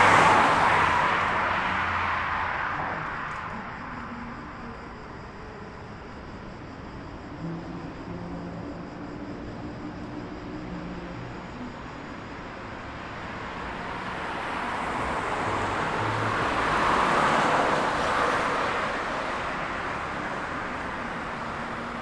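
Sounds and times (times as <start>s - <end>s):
car passing by: 0.0s - 4.1s, 13.4s - 20.4s
city road traffic: 0.0s - 22.0s.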